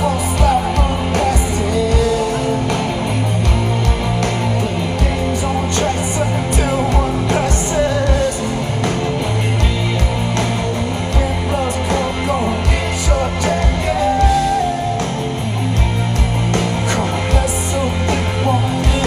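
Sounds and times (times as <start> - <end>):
live rock band playing: 0.0 - 19.0
person singing: 10.9 - 15.4.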